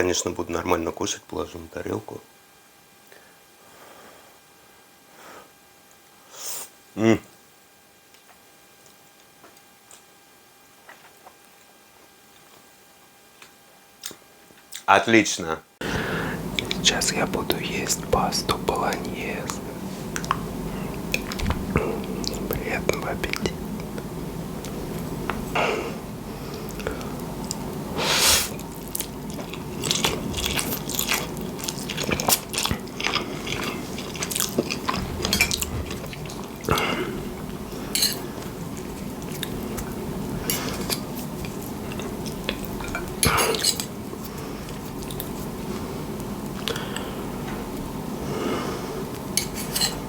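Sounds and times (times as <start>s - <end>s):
chewing: 28.6s - 47.1s
fork scraping on plate: 49.4s - 50.0s.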